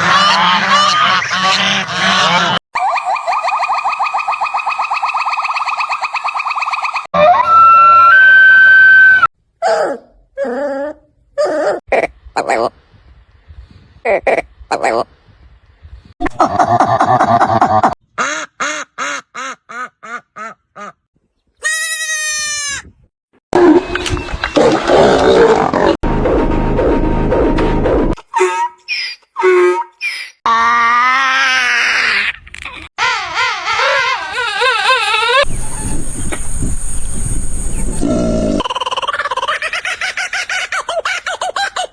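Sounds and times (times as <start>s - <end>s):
animal call with warbling pitch: 2.3s - 12.7s, 28.2s - 32.2s, 37.9s - 39.2s
loud noisy sound: 23.6s - 28.2s
low rumble: 26.0s - 28.2s.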